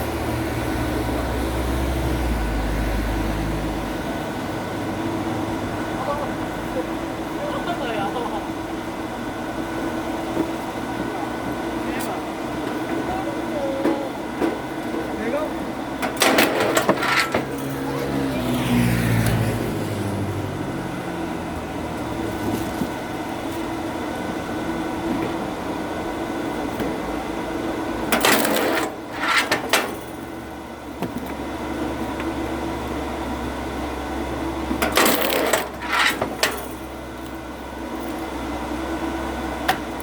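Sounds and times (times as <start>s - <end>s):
low mechanical hum: 0.0s - 40.0s.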